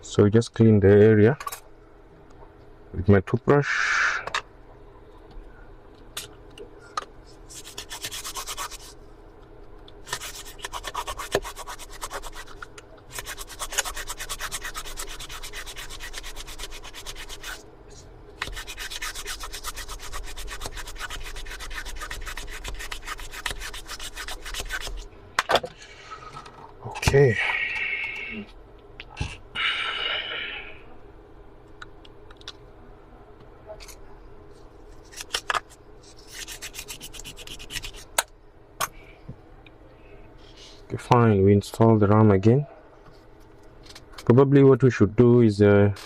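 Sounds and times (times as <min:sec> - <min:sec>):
toothbrush scrubbing: 0:07.5 - 0:09.0, 0:10.0 - 0:17.6, 0:18.4 - 0:25.0, 0:36.1 - 0:38.1.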